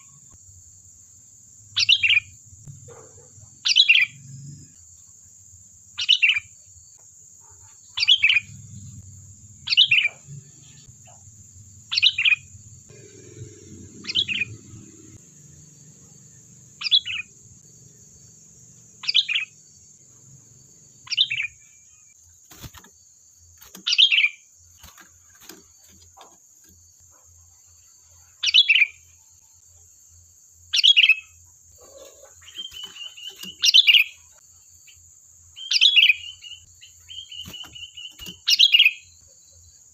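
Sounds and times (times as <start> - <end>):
bird chattering trill: 9.6 - 11.2, 11.8 - 15.0, 16.8 - 17.3, 19.0 - 19.5, 30.8 - 34.3
bird calling: 11.9 - 15.2, 16.8 - 17.4, 31.8 - 34.3.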